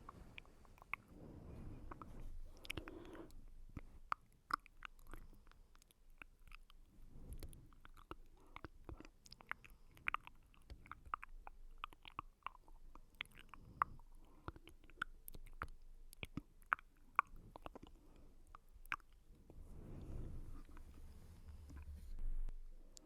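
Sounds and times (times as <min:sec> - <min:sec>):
wet lip and tongue clicks: 0:00.1 - 0:01.1, 0:01.9 - 0:19.3.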